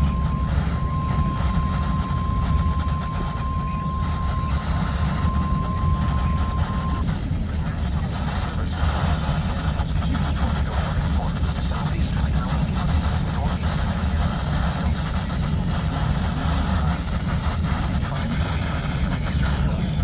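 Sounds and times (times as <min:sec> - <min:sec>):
high warning alarm tone: 0:00.0 - 0:07.2
loud low rumble: 0:00.0 - 0:20.0.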